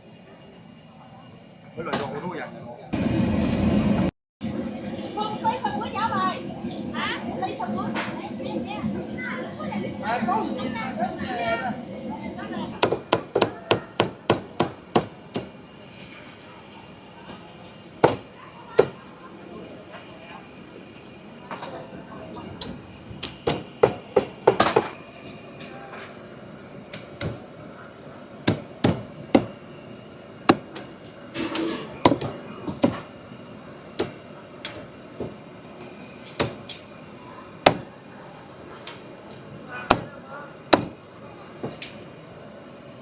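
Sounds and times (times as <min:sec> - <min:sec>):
cleaver chopping on board: 0:28.5 - 0:29.5, 0:37.7 - 0:37.9, 0:40.8 - 0:41.0.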